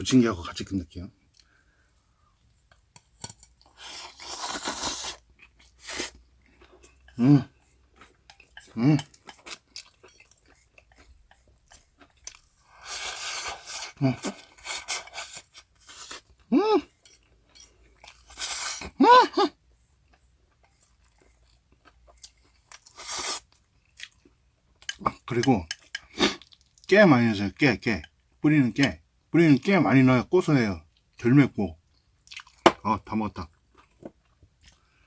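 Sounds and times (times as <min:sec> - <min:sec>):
person chewing noodles: 0:01.3 - 0:25.0, 0:31.9 - 0:32.7.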